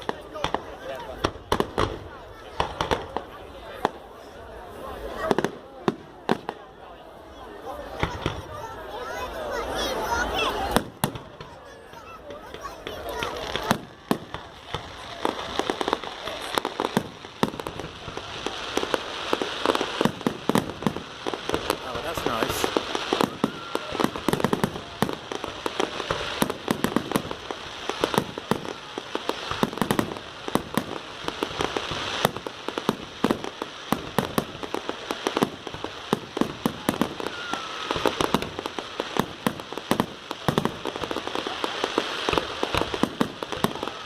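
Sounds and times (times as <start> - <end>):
fireworks bangs and crackles: 0.0 - 44.0.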